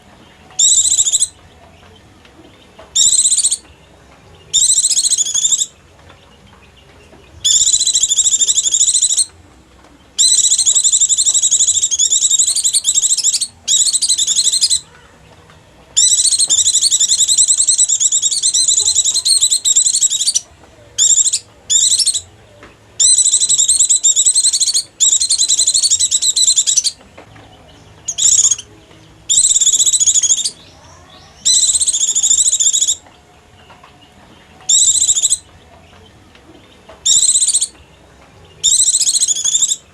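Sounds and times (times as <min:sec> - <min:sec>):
bird chattering twitter: 0:00.6 - 0:01.4, 0:02.9 - 0:03.6, 0:04.5 - 0:05.8, 0:07.4 - 0:09.3, 0:10.2 - 0:15.1, 0:16.0 - 0:22.3, 0:23.0 - 0:27.0, 0:28.0 - 0:28.7, 0:29.3 - 0:33.0, 0:34.7 - 0:35.5, 0:37.0 - 0:37.8, 0:38.6 - 0:39.9.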